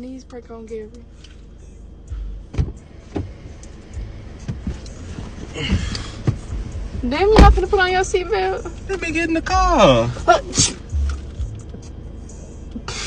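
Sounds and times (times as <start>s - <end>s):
low steady rumble: 0.0s - 13.0s
knocks inside a car: 2.5s - 3.4s, 4.4s - 4.8s, 5.6s - 6.6s, 7.2s - 7.8s.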